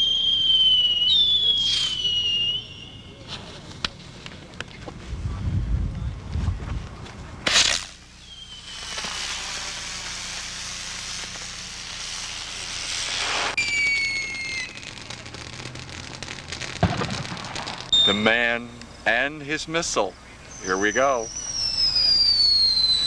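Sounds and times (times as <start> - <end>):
falling firework whistle: 0.0 - 4.0, 7.4 - 19.2, 20.3 - 23.0
fireworks hissing and crackling: 0.0 - 23.0
fireworks bang: 7.4 - 19.1.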